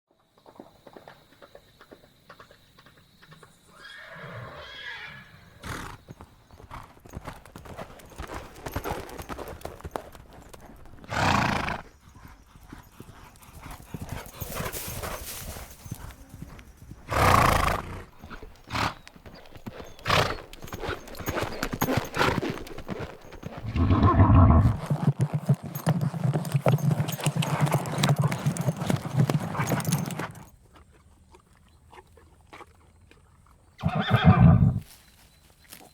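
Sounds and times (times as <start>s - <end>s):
horse hooves clip-clopping: 0.2s - 3.7s, 5.6s - 35.9s
horse vocal outbursts: 23.6s - 24.9s, 33.8s - 34.8s.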